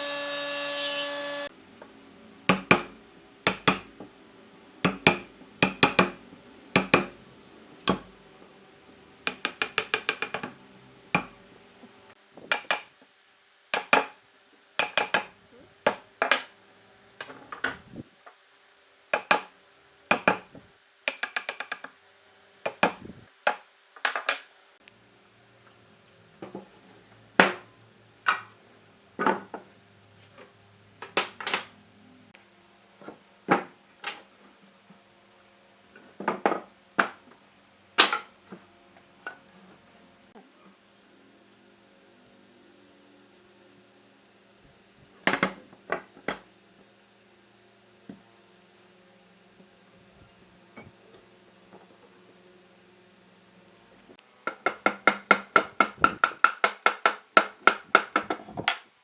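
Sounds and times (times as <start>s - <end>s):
tool knocking on wood: 2.5s - 4.1s, 4.8s - 6.2s, 6.8s - 7.2s, 7.9s - 8.1s, 9.2s - 10.5s, 11.2s - 11.4s, 12.5s - 12.9s, 13.7s - 14.2s, 14.8s - 15.3s, 15.9s - 16.5s, 19.1s - 19.5s, 20.1s - 21.8s, 22.7s - 24.4s, 54.4s - 58.8s.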